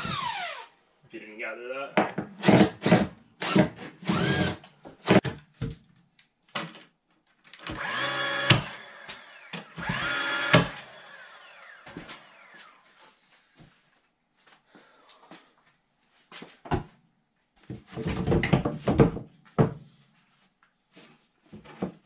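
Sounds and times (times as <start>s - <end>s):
power drill motor bursts: 3.4s - 4.6s, 7.6s - 13.0s.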